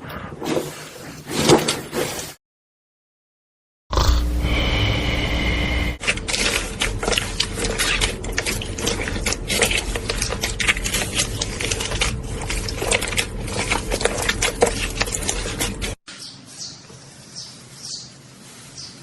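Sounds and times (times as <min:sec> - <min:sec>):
slime squeezed and stretched: 0:06.1 - 0:15.9.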